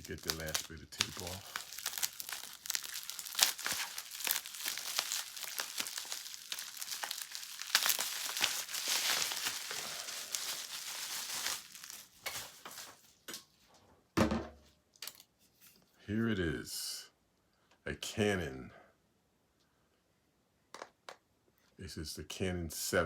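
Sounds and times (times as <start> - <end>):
packing tape tearing: 0.0 - 13.0
bubble wrap crinkling: 0.0 - 13.3.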